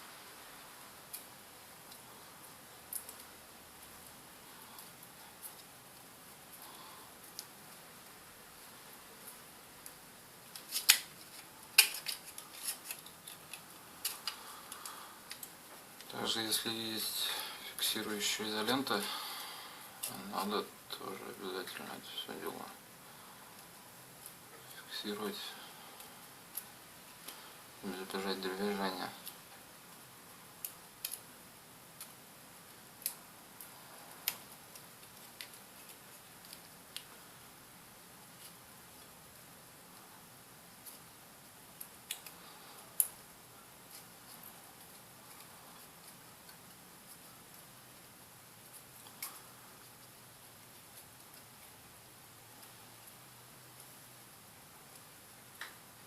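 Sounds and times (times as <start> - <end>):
small parts clicking and tapping: 9.8 - 16.1, 30.6 - 31.3.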